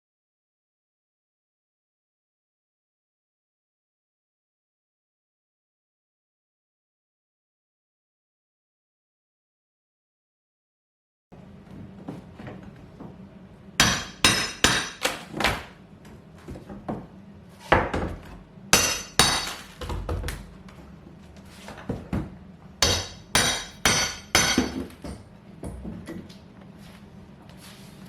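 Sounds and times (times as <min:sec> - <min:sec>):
sharp hammer strikes: 0:13.8 - 0:15.2, 0:18.8 - 0:19.7, 0:22.8 - 0:24.8.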